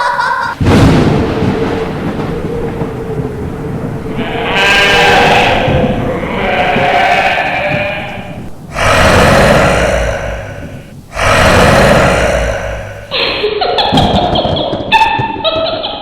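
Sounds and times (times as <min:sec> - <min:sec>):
low dark rumble: 0:00.7 - 0:13.4
wavering moan-like wails: 0:01.4 - 0:13.4.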